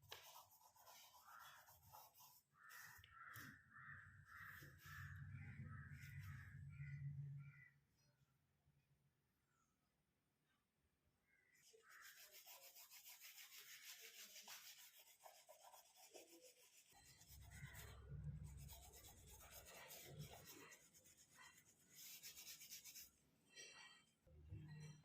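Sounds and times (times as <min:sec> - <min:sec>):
rubbing strokes on a shoe: 0:11.8 - 0:18.0.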